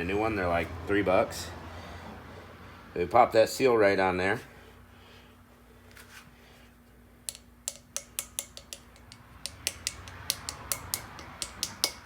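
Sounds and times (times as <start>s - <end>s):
hammer tapping on metal: 7.3s - 12.0s.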